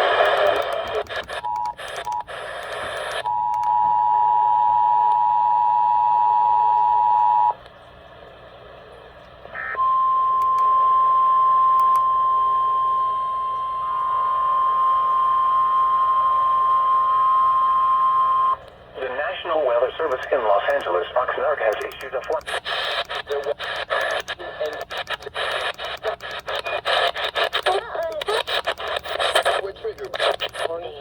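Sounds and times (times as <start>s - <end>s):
choppy bursts: 19.9s - 30.8s.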